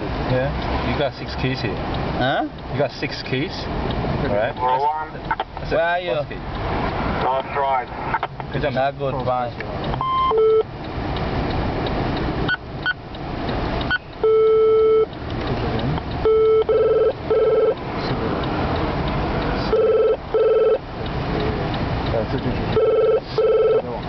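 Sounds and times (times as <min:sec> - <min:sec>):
low rumble of car: 0:00.0 - 0:24.0
short high beeps: 0:10.0 - 0:10.7, 0:13.9 - 0:15.1, 0:16.2 - 0:17.8
telephone ringback tone: 0:16.2 - 0:17.8, 0:19.7 - 0:20.8, 0:22.8 - 0:23.8.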